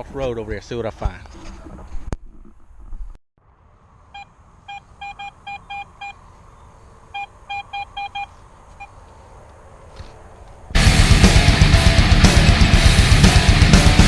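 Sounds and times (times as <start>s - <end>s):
metal detector beeps: 4.2s - 6.2s, 7.1s - 9.0s.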